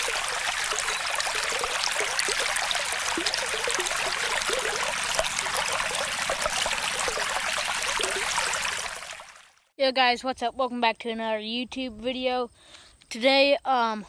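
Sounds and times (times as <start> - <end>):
stream water gurgling: 0.0 - 9.7.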